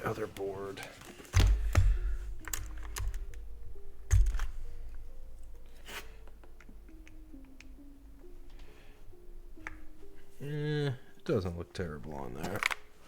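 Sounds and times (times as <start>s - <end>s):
quiet background music: 0.0s - 13.0s
dull thump: 1.4s - 3.2s.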